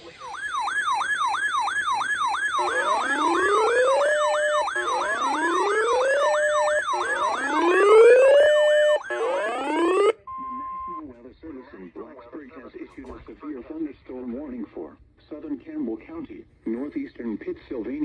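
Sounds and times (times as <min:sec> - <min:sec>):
fast siren yelp: 0:00.0 - 0:11.0
slow siren wail: 0:00.0 - 0:11.0.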